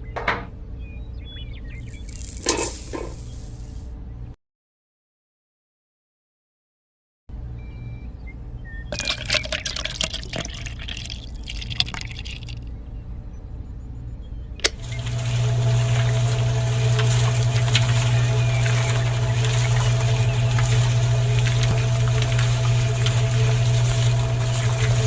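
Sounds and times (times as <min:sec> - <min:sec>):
water pump humming: 0:01.7 - 0:03.8, 0:08.9 - 0:12.6, 0:14.6 - 0:25.0
water splashing and trickling: 0:08.9 - 0:12.7, 0:14.8 - 0:25.0.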